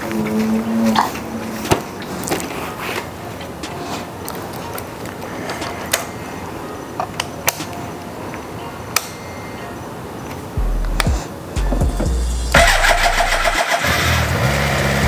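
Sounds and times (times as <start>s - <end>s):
background hiss: 0.0s - 15.0s
sharp clicks and ticks: 10.6s - 14.4s
motorcycle engine starting: 10.6s - 15.0s.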